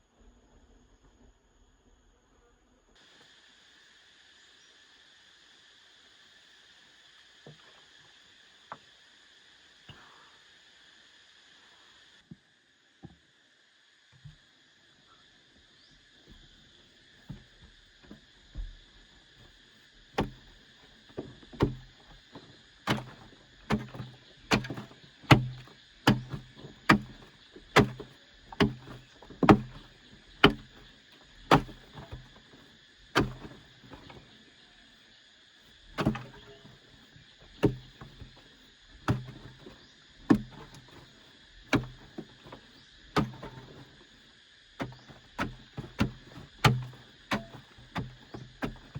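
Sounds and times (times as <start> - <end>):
hand tool striking earth: 17.3 - 34.3, 35.8 - 44.1, 44.8 - 48.9.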